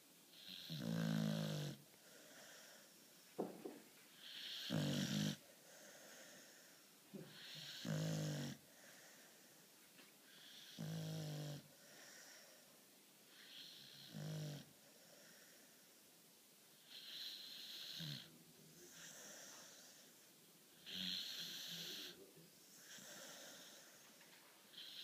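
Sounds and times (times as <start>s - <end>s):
dog snoring: 0.3s - 1.8s, 4.2s - 6.5s, 7.2s - 8.6s, 10.3s - 12.4s, 13.3s - 15.5s, 16.8s - 20.0s, 20.8s - 24.0s, 24.7s - 25.0s.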